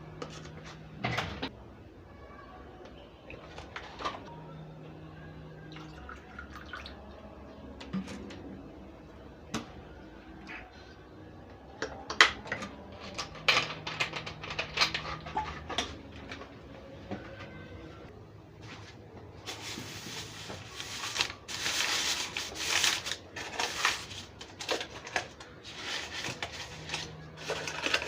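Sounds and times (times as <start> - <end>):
household items clinking and knocking: 11.8 - 16.5.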